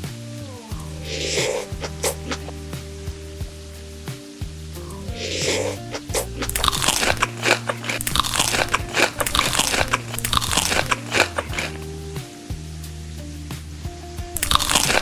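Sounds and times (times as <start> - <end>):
crunchy food being chewed: 0.8 - 2.6, 4.8 - 11.9, 14.4 - 15.0.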